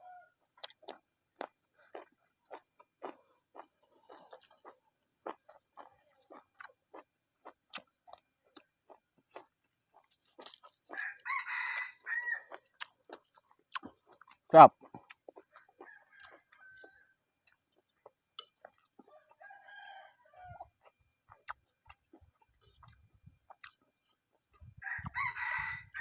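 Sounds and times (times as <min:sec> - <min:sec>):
wet chewing smacks: 0:00.6 - 0:19.1, 0:20.6 - 0:25.2
rooster crowing: 0:10.9 - 0:12.6, 0:15.8 - 0:17.2, 0:19.0 - 0:20.7, 0:24.8 - 0:26.0.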